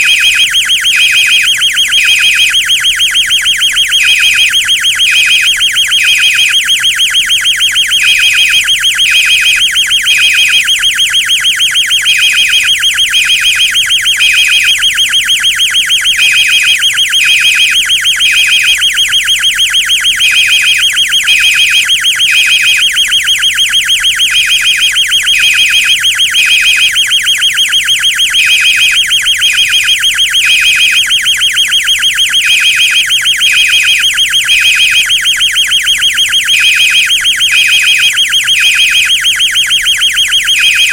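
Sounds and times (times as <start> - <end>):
pulsing electronic fire alarm horn: 0.0 - 40.9
beeping tone in groups: 32.4 - 35.1, 36.4 - 39.2, 40.5 - 40.9.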